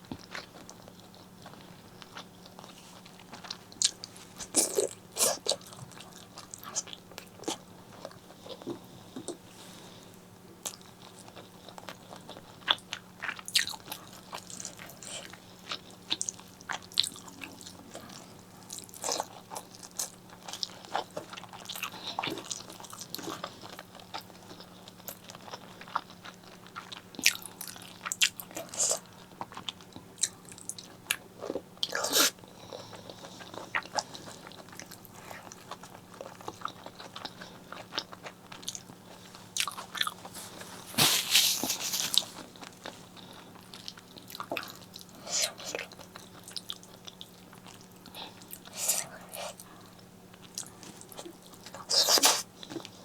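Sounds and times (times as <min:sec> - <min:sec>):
person chewing food: 0:00.0 - 0:09.5, 0:10.1 - 0:53.0
faint low hum: 0:00.0 - 0:53.0.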